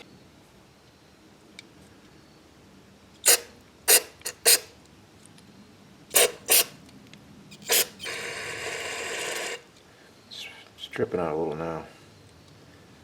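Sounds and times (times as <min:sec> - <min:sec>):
aerosol spray spurts: 0:03.3 - 0:04.7.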